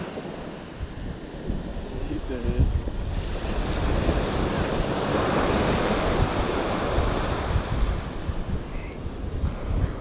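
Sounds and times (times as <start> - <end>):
ocean surf breaking: 0.0 - 10.0
wind buffeting microphone: 0.0 - 10.0.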